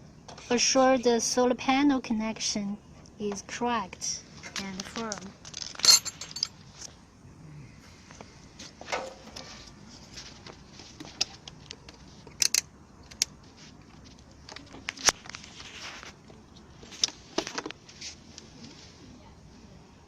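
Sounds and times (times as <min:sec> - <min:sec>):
plastic connectors clicking: 0:12.3 - 0:13.3.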